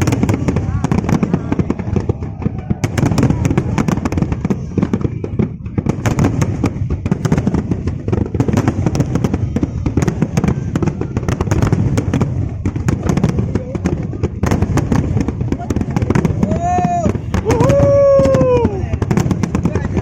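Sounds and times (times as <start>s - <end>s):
fireworks crackling and popping: 0.0s - 20.0s
low rumble of firework bursts: 0.0s - 20.0s.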